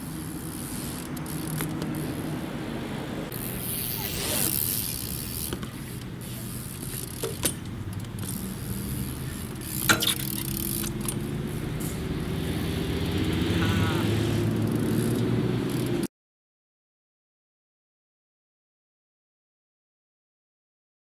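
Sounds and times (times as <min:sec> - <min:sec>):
engine-like hum: 0:00.0 - 0:16.1.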